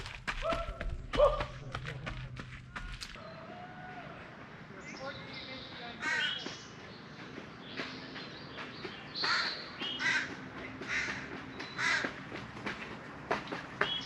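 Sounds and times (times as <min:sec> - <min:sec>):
crow cawing: 0:06.0 - 0:06.4, 0:09.2 - 0:12.2.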